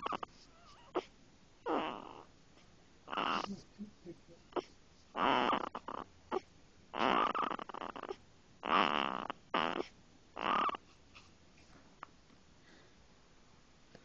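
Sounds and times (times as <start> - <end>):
baby snoring: 0.0 - 2.3, 3.1 - 3.7, 4.5 - 10.9
baby snorting: 0.0 - 2.3, 3.1 - 3.7, 4.5 - 11.4.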